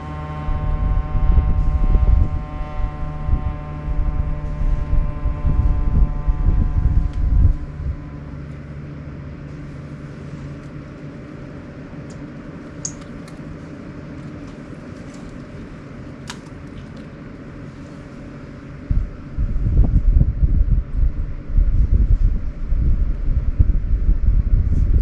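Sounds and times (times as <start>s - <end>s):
low rumble: 0.0s - 12.7s, 18.5s - 25.0s
air conditioner hum and airflow: 0.0s - 25.0s.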